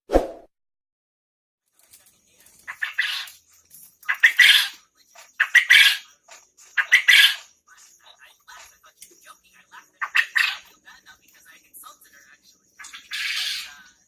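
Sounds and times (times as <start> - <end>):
quail calling: 2.7 - 3.3, 4.1 - 4.8, 5.4 - 6.1, 6.8 - 7.4, 10.0 - 10.7, 12.8 - 13.9.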